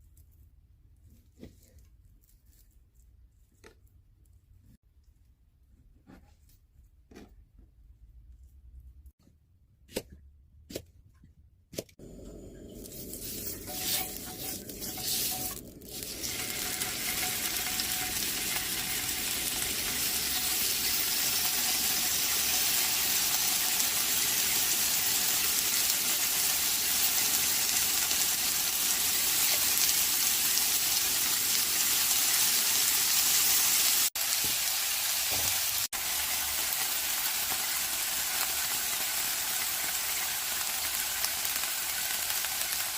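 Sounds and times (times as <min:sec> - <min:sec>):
meat sizzling in a frying pan: 0:12.9 - 0:42.9.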